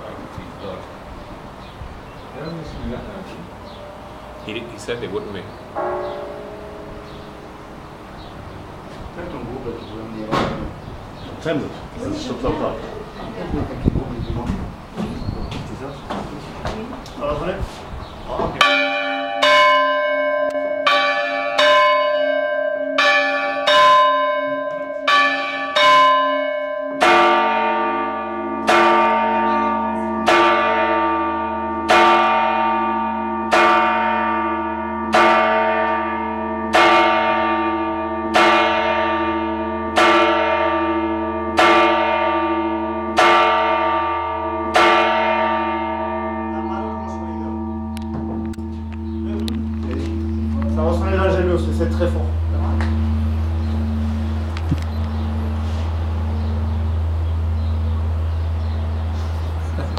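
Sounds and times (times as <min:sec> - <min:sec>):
large deep church bell ringing: 0:00.0 - 0:13.5, 0:18.5 - 0:59.9
small church bell ringing: 0:03.4 - 0:10.9, 0:18.6 - 0:59.8.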